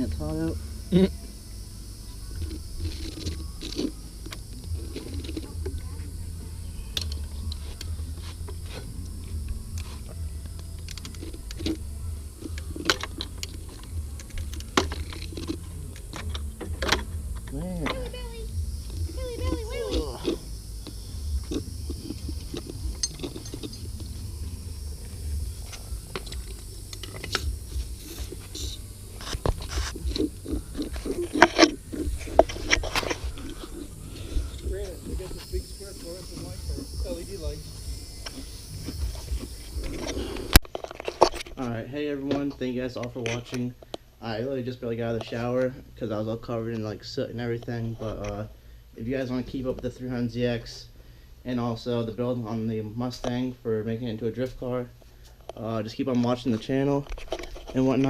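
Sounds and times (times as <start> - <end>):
steady low hum: 0.0 - 58.0
hand tools clicking and tapping: 2.2 - 41.5.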